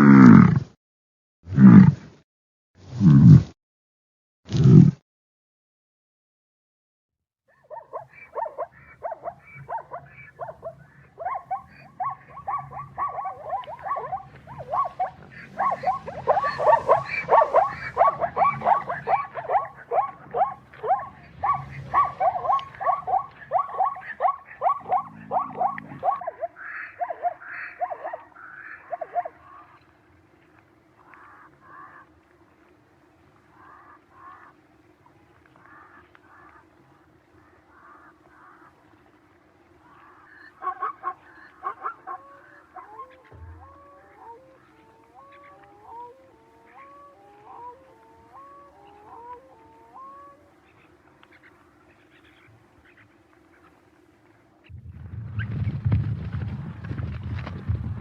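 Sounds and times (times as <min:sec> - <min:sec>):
animal yelping: 0:07.5 - 0:29.9, 0:39.9 - 0:53.6.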